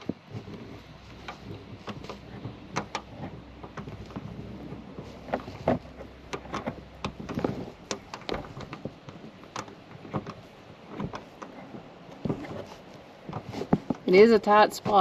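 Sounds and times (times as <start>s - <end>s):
rustling: 0.0s - 15.0s.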